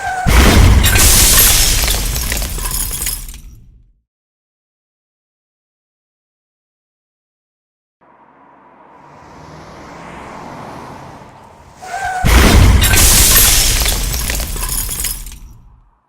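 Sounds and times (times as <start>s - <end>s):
vehicle crash impact: 0.0s - 3.6s, 8.2s - 15.9s.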